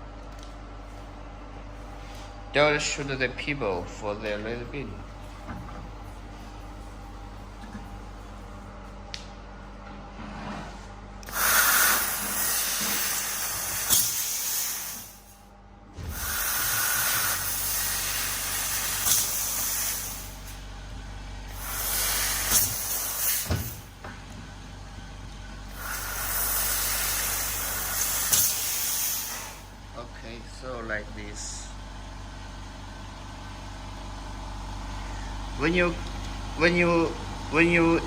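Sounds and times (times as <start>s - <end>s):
assist gas jet hissing: 11.2s - 15.4s, 16.0s - 20.6s, 21.5s - 23.9s, 25.7s - 29.7s.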